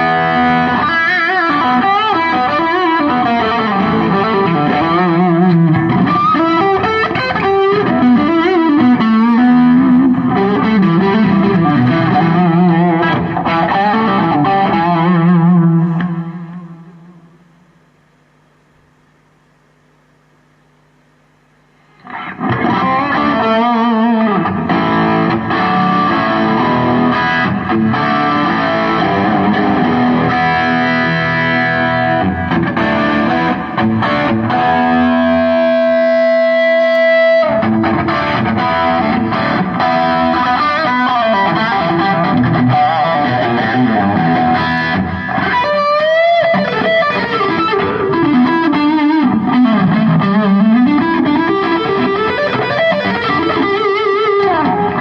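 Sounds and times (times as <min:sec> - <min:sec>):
distorted electric guitar: 0:00.0 - 0:55.0.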